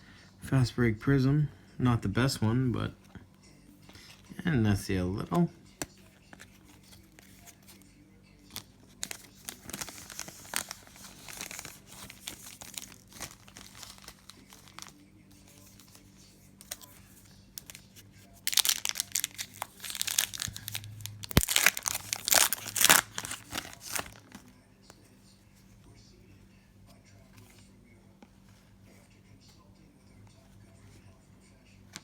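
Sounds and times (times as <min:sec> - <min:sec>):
foil wrapper crinkling and tearing: 0:08.5 - 0:17.0, 0:17.6 - 0:24.5.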